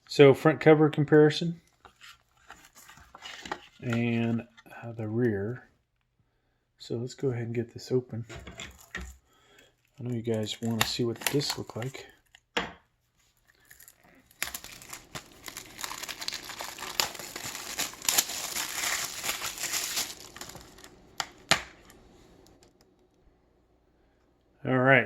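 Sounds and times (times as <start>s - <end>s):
plastic packaging crinkling: 9.9s - 12.4s, 13.3s - 22.7s.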